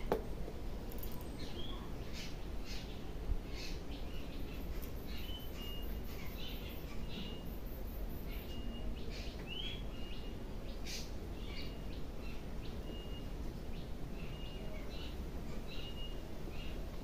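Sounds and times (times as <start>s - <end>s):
low background noise: 0.0s - 17.0s
birds whistling: 8.4s - 13.4s, 14.2s - 16.8s.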